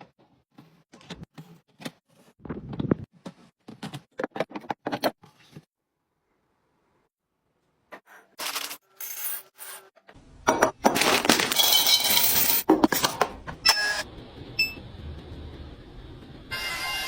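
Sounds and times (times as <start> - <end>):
containers clinking and knocking: 10.5 - 13.4.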